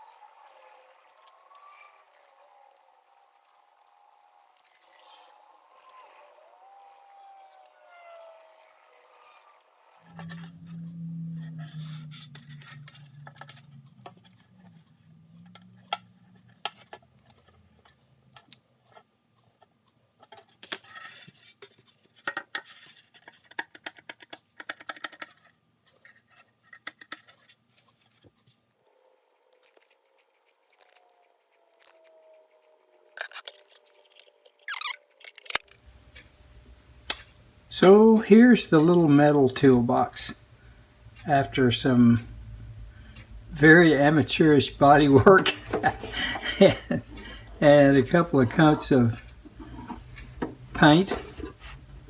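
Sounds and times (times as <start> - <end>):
low hum: 6.6 - 16.6, 38.6 - 52.0.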